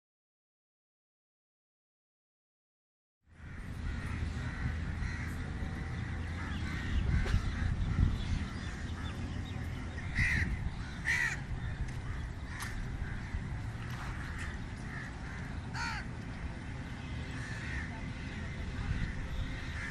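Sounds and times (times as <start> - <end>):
crows cawing: 3.3 - 16.4, 17.2 - 19.9
birds calling: 3.4 - 19.9
low rumble: 3.4 - 19.9.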